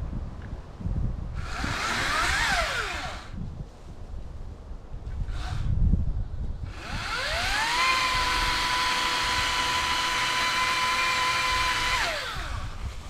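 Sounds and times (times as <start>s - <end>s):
electric chainsaw whine: 1.4s - 3.4s, 5.1s - 5.9s, 6.6s - 13.0s.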